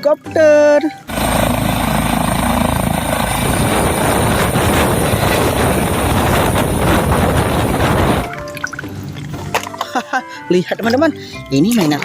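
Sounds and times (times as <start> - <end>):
helicopter rotor blades chopping: 1.1 - 8.3
helicopter high whine: 1.1 - 8.4.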